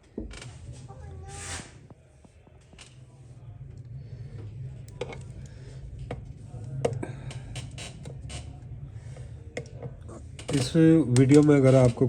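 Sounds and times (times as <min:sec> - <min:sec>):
steady low hum: 0:00.0 - 0:12.0
faint clicks and taps: 0:09.2 - 0:12.0.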